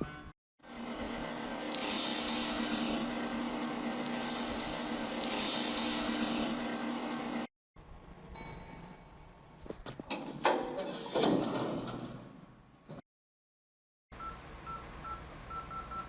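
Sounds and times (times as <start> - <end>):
small motor humming: 0.6 - 7.5.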